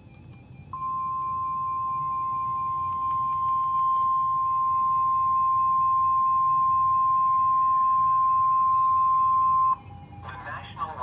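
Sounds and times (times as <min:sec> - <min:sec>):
steady alarm beep: 0:00.0 - 0:11.0.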